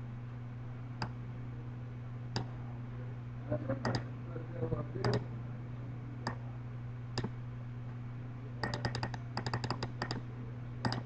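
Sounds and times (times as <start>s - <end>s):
low electrical hum: 0.0s - 11.0s
keyboard keys clicking: 8.6s - 10.2s.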